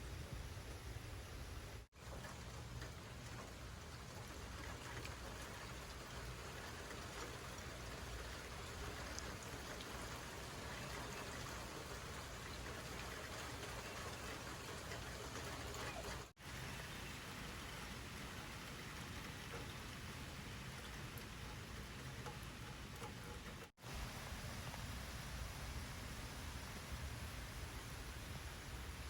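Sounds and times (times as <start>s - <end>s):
heavy rain hiss: 0.0s - 29.0s
raindrop ticks: 2.0s - 16.3s, 17.4s - 23.7s.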